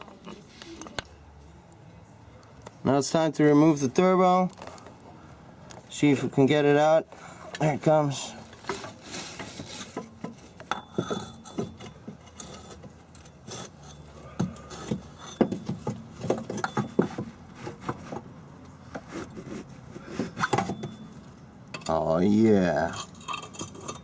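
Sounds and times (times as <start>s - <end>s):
metal parts knocking and scraping: 8.5s - 18.3s, 20.2s - 21.0s, 22.8s - 24.0s.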